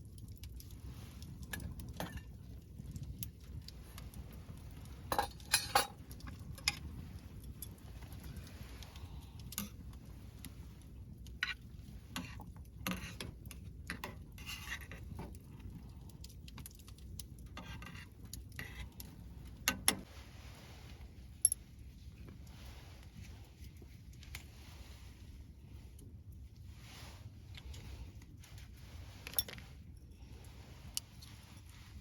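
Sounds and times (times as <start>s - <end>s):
light clicks and clinks: 0.1s - 20.1s, 21.4s - 22.3s, 27.5s - 31.9s
steady low rumble: 19.0s - 32.0s.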